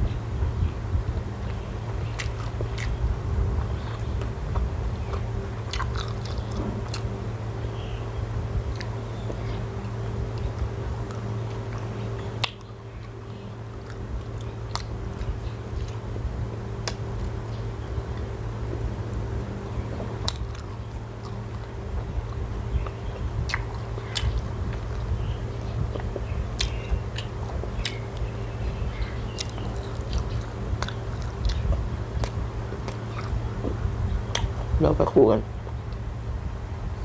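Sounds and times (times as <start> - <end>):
steady low hum: 0.0 - 37.0
person chewing food: 1.4 - 3.0, 3.6 - 7.2, 8.6 - 16.0, 16.8 - 17.1, 20.0 - 25.2, 25.8 - 28.4, 29.2 - 33.6, 34.3 - 34.8
food crunches: 3.7 - 7.1.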